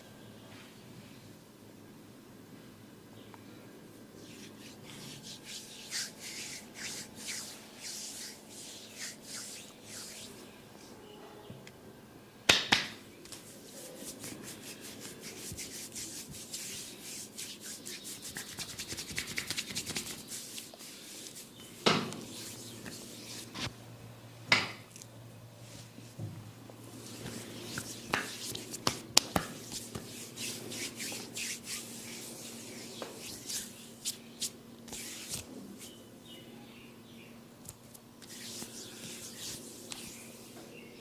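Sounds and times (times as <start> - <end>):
rubbing and scratching on scalp: 4.2 - 10.5, 13.3 - 23.7, 26.9 - 36.0, 38.2 - 40.5
sharp hand smacks: 12.5 - 13.4, 28.1 - 29.5.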